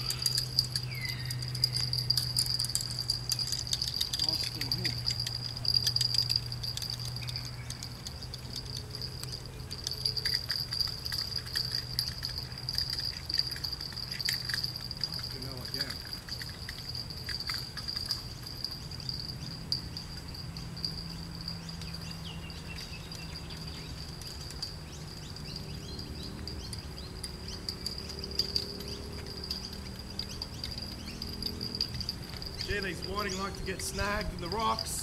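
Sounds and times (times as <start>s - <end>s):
high insect trill: 0.0s - 35.0s
low outdoor rumble: 0.0s - 35.0s
small ticks: 0.0s - 35.0s.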